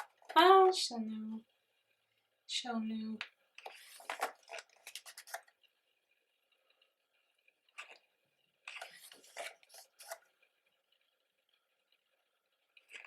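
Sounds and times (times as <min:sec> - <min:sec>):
rustling of book packaging: 0:03.6 - 0:05.5, 0:08.7 - 0:10.3.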